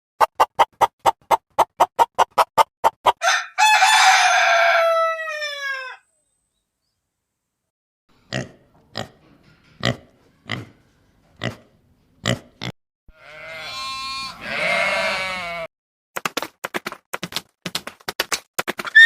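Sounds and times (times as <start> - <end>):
farm animal calls: 13.2 - 15.7.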